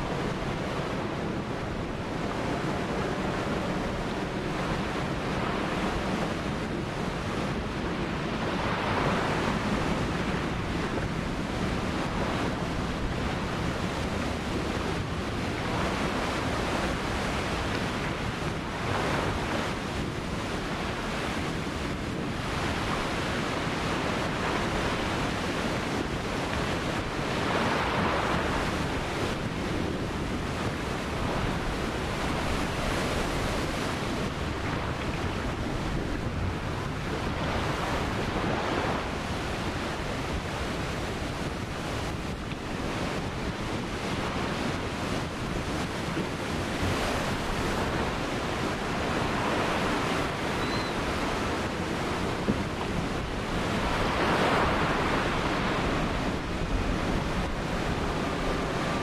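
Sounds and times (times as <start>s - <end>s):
waves breaking on beach: 0.0s - 59.0s
wind rumble on microphone: 0.0s - 59.0s.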